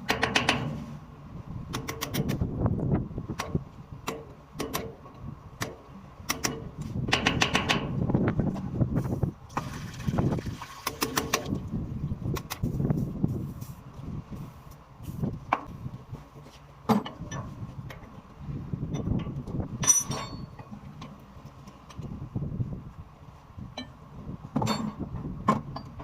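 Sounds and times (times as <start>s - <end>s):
steady low rumble: 11.5s - 16.4s.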